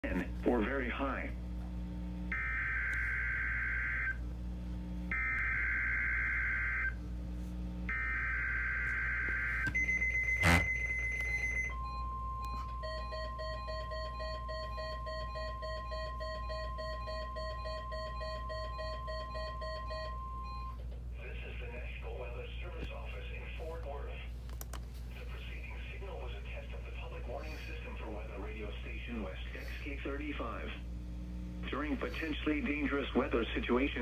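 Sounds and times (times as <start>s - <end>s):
warning alarm tone: 2.3s - 4.2s, 5.1s - 7.0s, 7.9s - 20.8s
rapid regular beeping: 9.8s - 20.8s.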